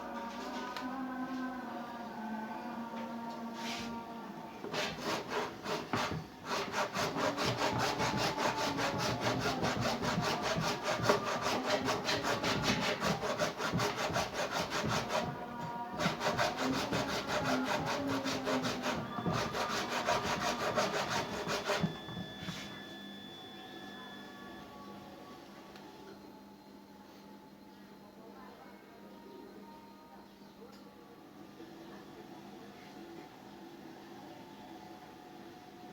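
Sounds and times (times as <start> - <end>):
saw cutting through plastic: 4.6 - 22.2.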